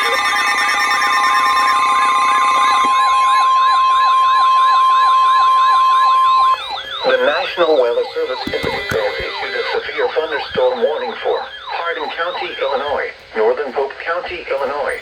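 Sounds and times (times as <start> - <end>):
steady high alarm tone: 0.0 - 14.6
fast warbling alert: 6.7 - 13.1.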